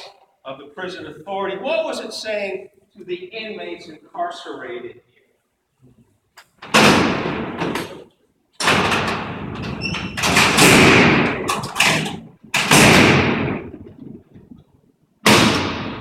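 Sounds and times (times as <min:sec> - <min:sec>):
steel door slamming shut: 0:06.6 - 0:13.9, 0:15.2 - 0:16.0
steel doors rolling on tracks: 0:08.6 - 0:13.9.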